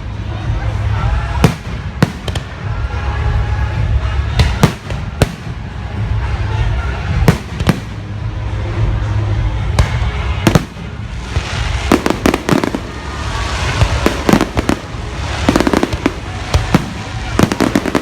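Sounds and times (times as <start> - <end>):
firework crackling reports: 0.0 - 18.0
low rumble: 0.0 - 18.0
firework bangs: 1.2 - 3.0, 4.3 - 5.8, 7.1 - 8.3, 9.6 - 18.0.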